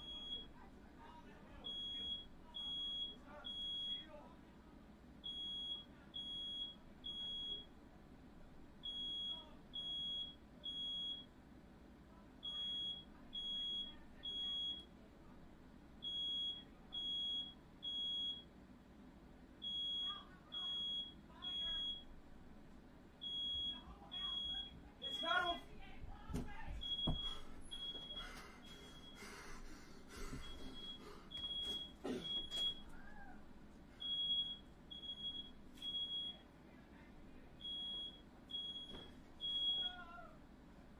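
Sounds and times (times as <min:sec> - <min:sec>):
smoke alarm beeping: 0:00.0 - 0:00.6, 0:01.6 - 0:04.1, 0:05.2 - 0:07.8, 0:08.8 - 0:11.3, 0:12.4 - 0:14.9, 0:16.0 - 0:18.5, 0:19.6 - 0:22.2, 0:23.2 - 0:25.7, 0:26.7 - 0:29.4, 0:30.2 - 0:33.0, 0:34.0 - 0:36.4, 0:37.6 - 0:40.0.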